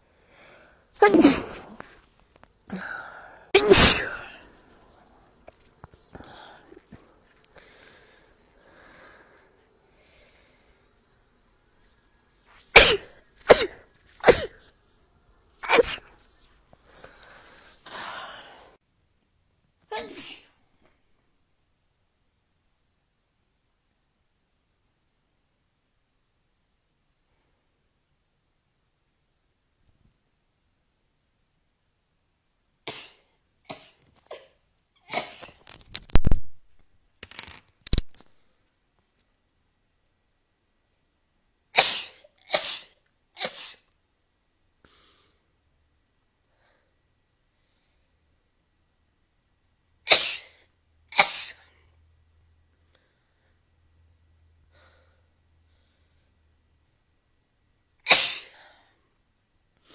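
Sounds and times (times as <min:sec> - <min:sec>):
person sneezing: 0:01.0 - 0:02.1, 0:02.7 - 0:04.6, 0:12.6 - 0:14.7, 0:15.6 - 0:16.2, 0:19.9 - 0:20.5, 0:32.9 - 0:35.6, 0:41.8 - 0:43.9, 0:50.1 - 0:51.8, 0:58.1 - 0:58.8.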